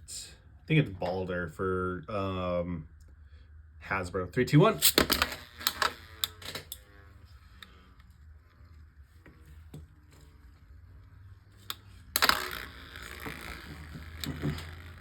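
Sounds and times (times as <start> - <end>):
spinning tops clattering: 4.8 - 6.9, 11.6 - 15.0.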